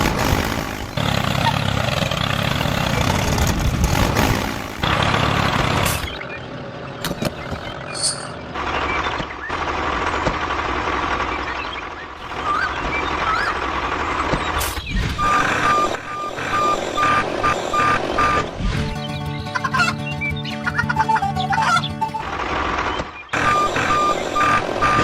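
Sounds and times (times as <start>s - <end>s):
vehicle engine running: 0.0s - 25.0s
reversing alarm beeps: 15.1s - 18.5s, 23.3s - 25.0s.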